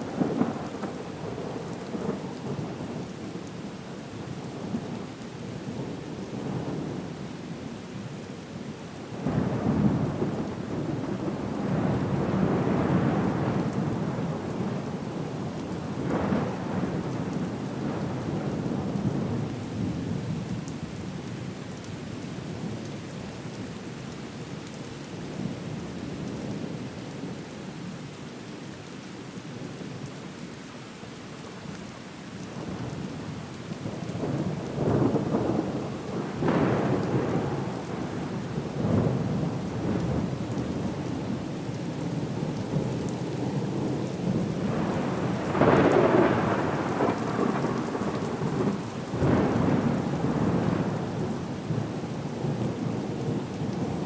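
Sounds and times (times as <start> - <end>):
rolling thunder: 34.2 - 41.0, 43.5 - 51.8.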